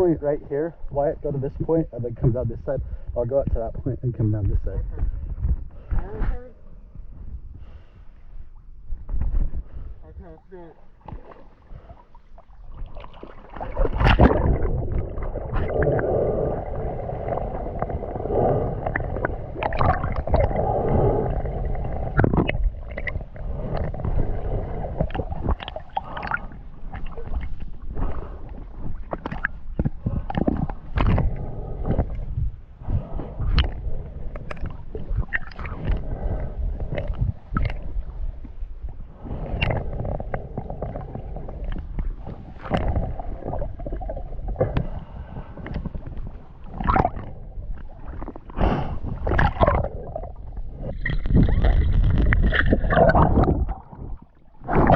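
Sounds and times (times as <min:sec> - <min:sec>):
muffled gurgling water: 0:00.0 - 0:54.9
bubbles: 0:11.0 - 0:28.3, 0:33.5 - 0:38.2, 0:39.4 - 0:45.0, 0:46.6 - 0:54.9
knocks and splashes: 0:12.7 - 0:15.8.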